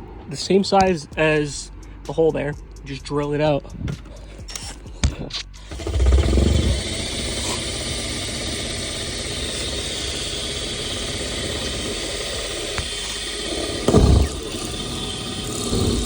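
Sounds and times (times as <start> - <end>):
electric drill drilling metal: 5.6 - 16.0
heavy bump: 11.8 - 16.0.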